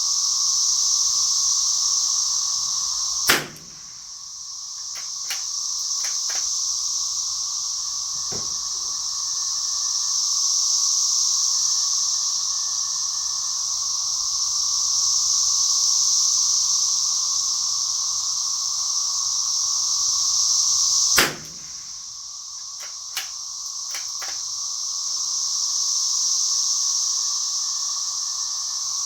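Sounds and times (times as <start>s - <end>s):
cicadas droning: 0.0s - 29.0s
light clicks: 3.3s - 4.0s, 4.8s - 6.5s, 21.2s - 22.0s, 22.8s - 24.4s
rifle shot: 3.3s - 4.1s, 4.9s - 6.5s, 21.2s - 22.0s, 22.8s - 24.4s.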